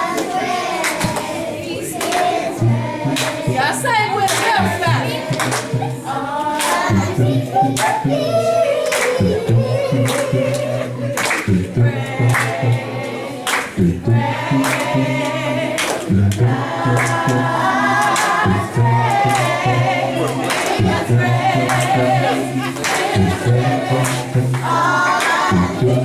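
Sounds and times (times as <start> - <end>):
gospel choir singing: 0.0 - 26.0
low sustained bass line: 2.6 - 4.0, 6.9 - 13.2, 13.8 - 26.0.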